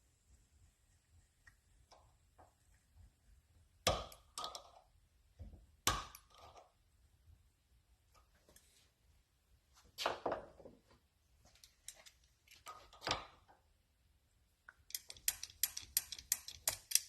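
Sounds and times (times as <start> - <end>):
sharp metal clicks: 14.8 - 17.0.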